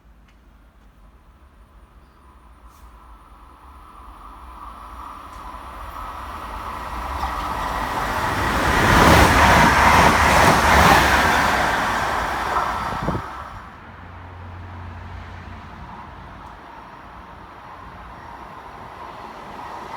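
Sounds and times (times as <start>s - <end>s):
train passing: 0.4s - 19.9s.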